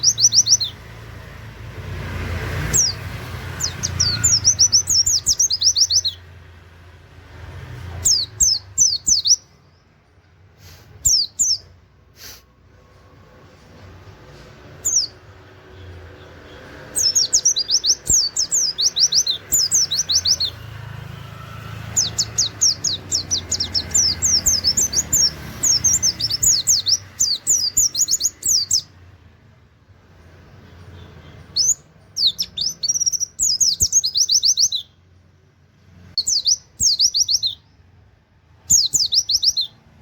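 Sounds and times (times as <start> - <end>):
white-eye bird singing: 0.0 - 1.2, 2.6 - 6.6, 7.8 - 10.0, 11.0 - 11.8, 14.7 - 29.1, 30.5 - 35.1, 36.1 - 40.0.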